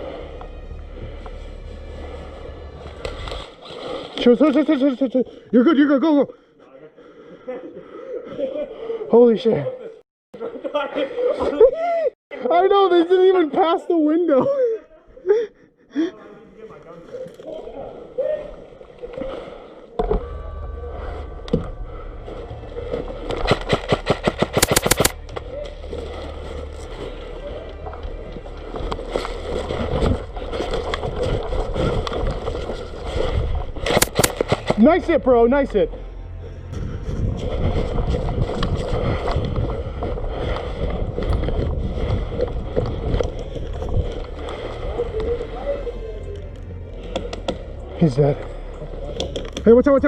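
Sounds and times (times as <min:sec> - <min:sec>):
steady low rumble: 0:00.0 - 0:03.6, 0:33.4 - 0:50.0
clicks and knocks from gear handling: 0:23.5 - 0:25.1, 0:33.9 - 0:34.8
airsoft rifle rapid shots: 0:23.6 - 0:25.2, 0:33.9 - 0:34.7
wind rumbling on microphone: 0:36.6 - 0:45.6.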